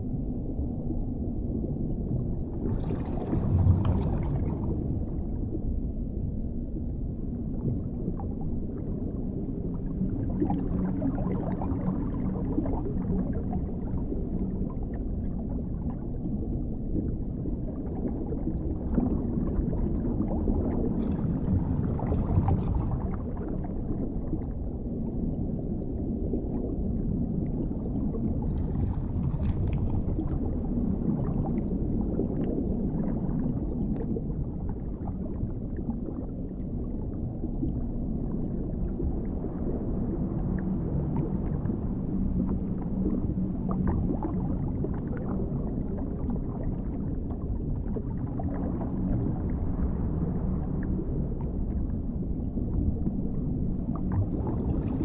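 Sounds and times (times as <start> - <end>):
deep underwater rumble: 0.0 - 55.0.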